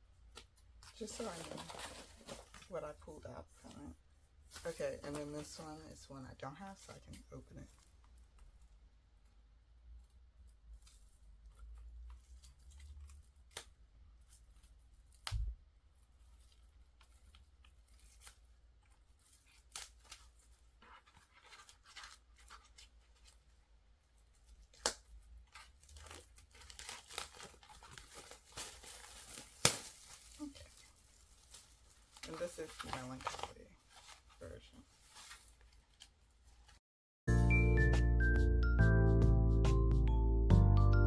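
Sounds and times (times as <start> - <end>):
plastic wrap tearing and crinkling: 10.7 - 23.5, 24.3 - 36.8.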